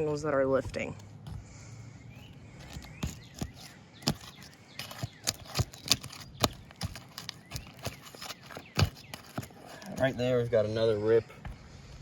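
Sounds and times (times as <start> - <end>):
pry tool cracking shingles: 2.6 - 10.3.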